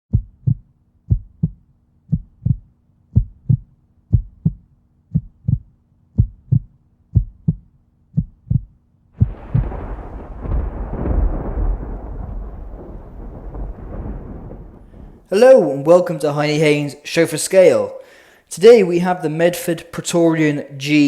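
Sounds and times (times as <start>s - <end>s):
heartbeat thumps: 0.1s - 11.8s
loud rumbling swell: 9.2s - 15.3s.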